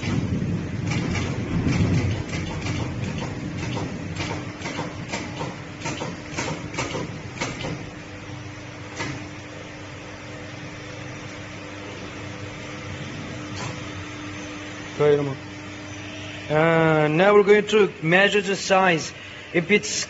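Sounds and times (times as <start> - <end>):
machine clicks and knocks: 0.0 - 7.9, 8.9 - 9.3, 13.5 - 13.8
crimping machine humming: 0.0 - 20.0.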